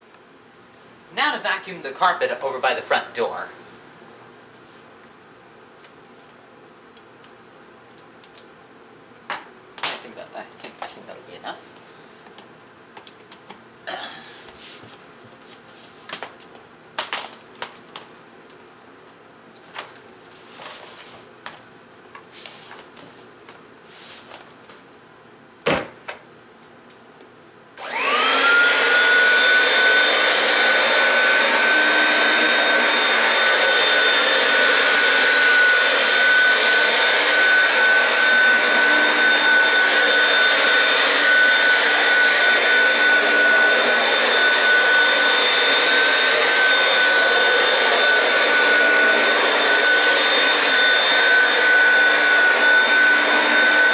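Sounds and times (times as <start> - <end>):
vacuum cleaner motor whine: 27.8 - 53.9.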